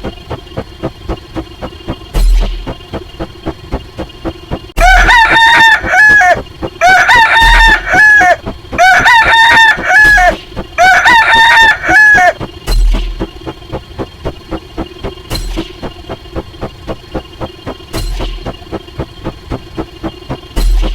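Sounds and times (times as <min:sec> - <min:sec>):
faint background music with beat: 0:00.0 - 0:20.9
rooster crowing: 0:04.8 - 0:12.4.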